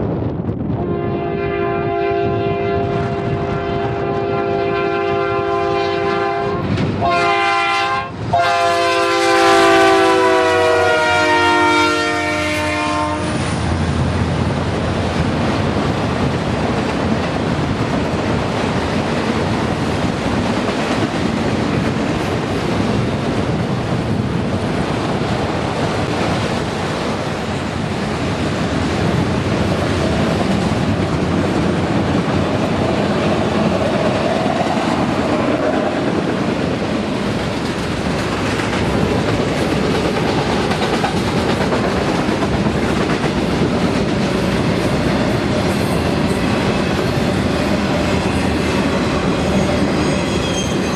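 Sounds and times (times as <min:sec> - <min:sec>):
freight train rumble: 0:00.0 - 0:50.9
locomotive air horn: 0:00.8 - 0:13.5
wheels clacking over rail joints: 0:28.7 - 0:50.9.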